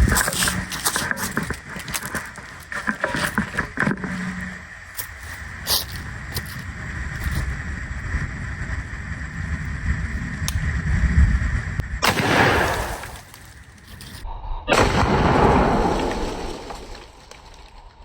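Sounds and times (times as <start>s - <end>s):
wind rumbling on microphone: 0.0s - 18.0s
shotgun shot: 12.0s - 13.3s, 14.7s - 17.1s.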